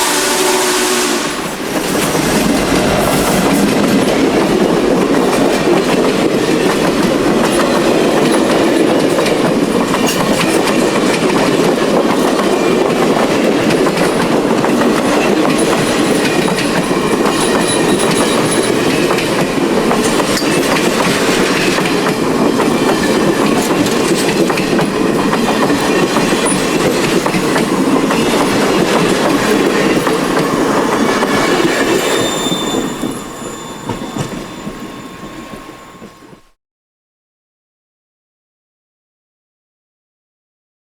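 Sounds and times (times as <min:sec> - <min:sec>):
train cars rumbling past: 0:00.0 - 0:36.5
wheels clicking over rail joints: 0:01.6 - 0:32.1
faint thin wheel squeal: 0:31.4 - 0:36.4.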